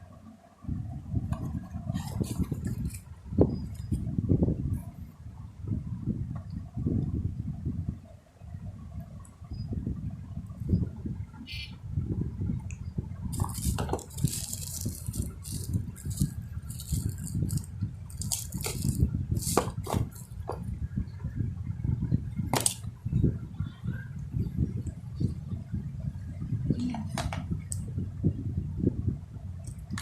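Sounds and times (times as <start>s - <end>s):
microphone handling rumble: 0.7s - 30.0s
packaging rustling: 13.3s - 20.3s.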